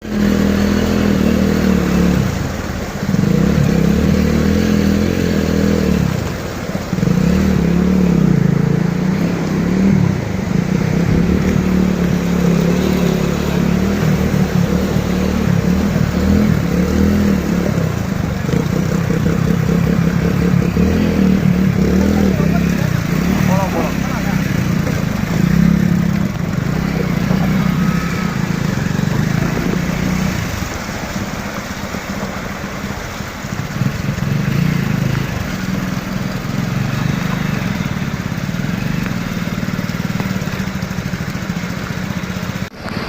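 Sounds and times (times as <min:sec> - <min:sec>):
engine running low: 0:00.0 - 0:43.0.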